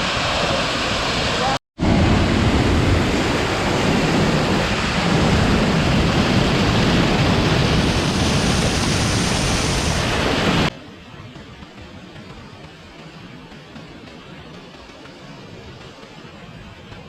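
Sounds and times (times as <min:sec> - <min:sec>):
waterfall rushing: 0:00.0 - 0:10.7.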